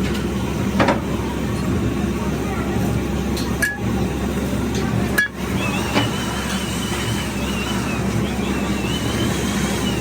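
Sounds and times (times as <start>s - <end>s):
factory machinery hum: 0.0s - 10.0s
thin wavering high whine: 5.0s - 10.0s.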